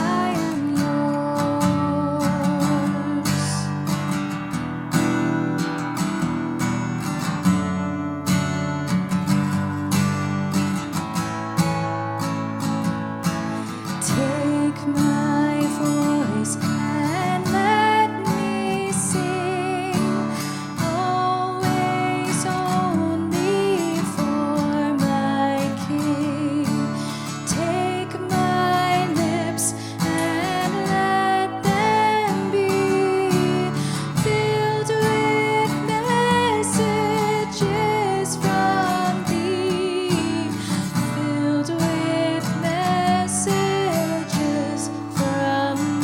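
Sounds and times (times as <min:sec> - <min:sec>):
strummed acoustic guitar: 0:00.0 - 0:46.0.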